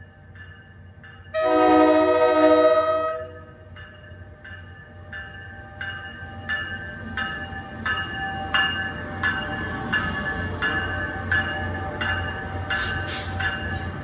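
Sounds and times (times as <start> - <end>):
train bell ringing: 0.0 - 14.0
train horn blast: 1.4 - 3.5.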